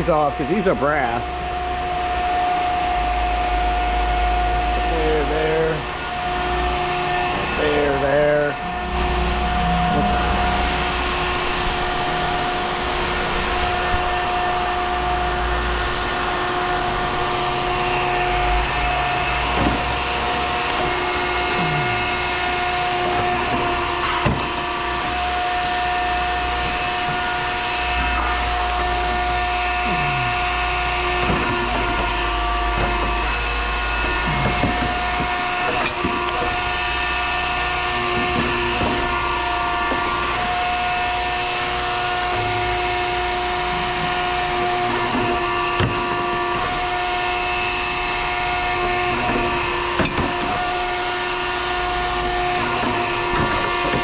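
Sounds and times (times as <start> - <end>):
hydraulic power unit whine: 0.0 - 54.0
metal clanks and knocks: 19.5 - 47.3, 48.4 - 51.0, 51.6 - 54.0.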